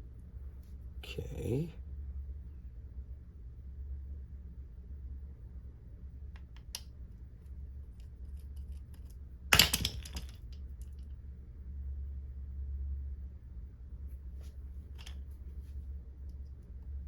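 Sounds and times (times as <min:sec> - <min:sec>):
low steady hum: 0:00.0 - 0:17.0
metal clatter: 0:09.5 - 0:10.4
metal parts clicking on workbench: 0:09.6 - 0:10.4, 0:14.9 - 0:15.2.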